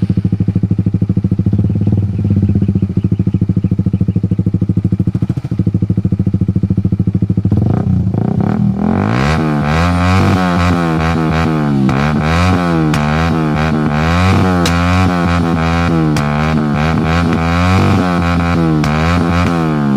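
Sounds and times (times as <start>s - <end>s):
motorcycle engine idling and revving: 0.0s - 19.9s.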